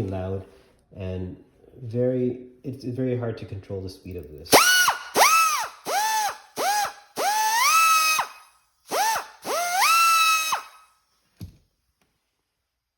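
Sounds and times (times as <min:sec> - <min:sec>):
die grinder whining: 0:04.5 - 0:10.8.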